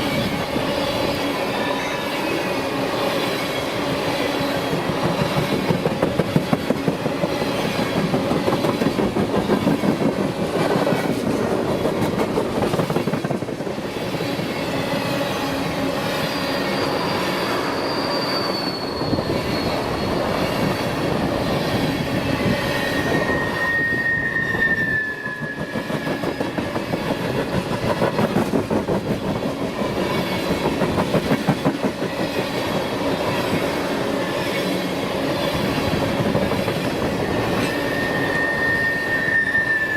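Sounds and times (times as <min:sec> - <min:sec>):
freight train wheels clicking on rails: 0:00.0 - 0:17.6, 0:19.1 - 0:38.8
wheel squeals: 0:16.1 - 0:27.4, 0:36.7 - 0:39.9.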